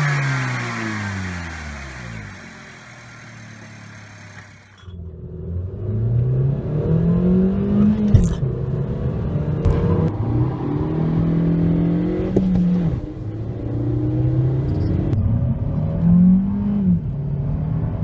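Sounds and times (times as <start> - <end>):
car engine revving: 0.0 - 8.1.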